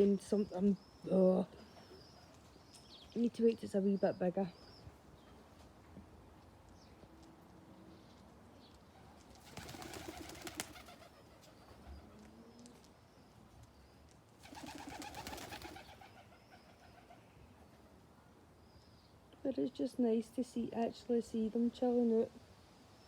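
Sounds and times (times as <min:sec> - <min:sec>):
soft pigeon calls: 0:06.7 - 0:18.0
pigeons cooing: 0:14.4 - 0:17.2.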